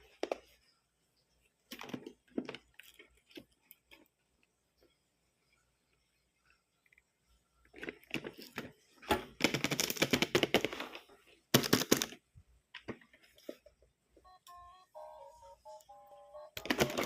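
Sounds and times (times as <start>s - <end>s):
plastic packaging crinkling: 16.6s - 17.0s.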